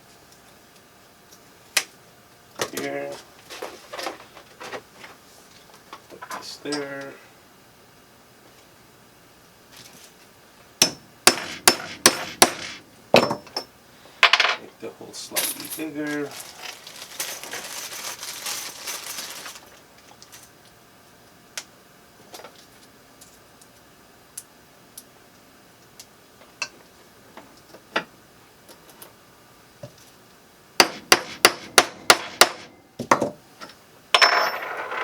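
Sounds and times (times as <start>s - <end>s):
hand tool scraping plastic: 30.9s - 32.7s.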